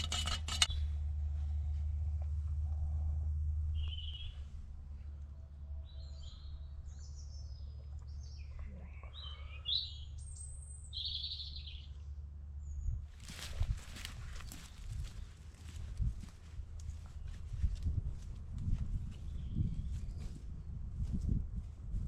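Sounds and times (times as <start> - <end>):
steady low rumble: 0.0 - 6.0
songbirds chirping and whistling: 3.8 - 4.5, 5.8 - 13.3, 14.3 - 15.4, 19.1 - 20.4.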